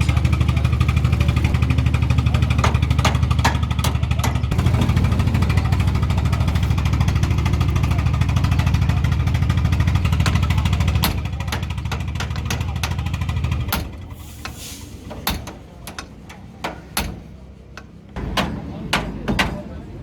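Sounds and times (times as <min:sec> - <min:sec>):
engine running steadily: 0:00.0 - 0:20.0
sharp metallic knocks: 0:00.2 - 0:19.9.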